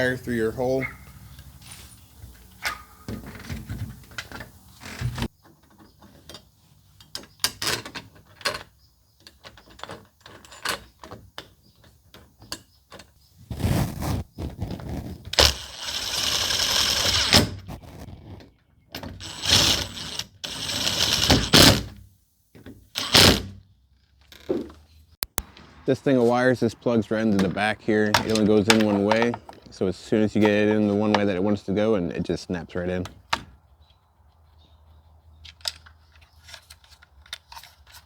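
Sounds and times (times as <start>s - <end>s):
hardware clicks and knocks: 24.4s - 25.7s, 27.4s - 29.8s.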